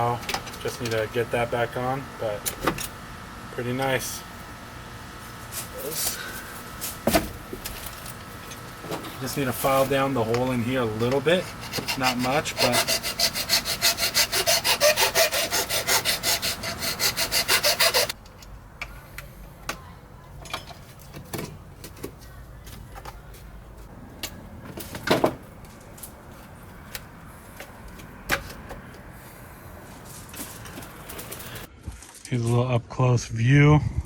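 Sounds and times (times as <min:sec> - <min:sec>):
hand file rasping: 0:10.8 - 0:18.2.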